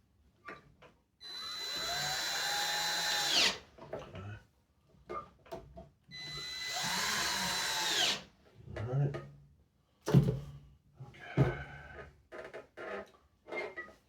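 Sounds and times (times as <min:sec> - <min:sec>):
cordless drill whining: 0:01.2 - 0:03.6, 0:06.2 - 0:08.2.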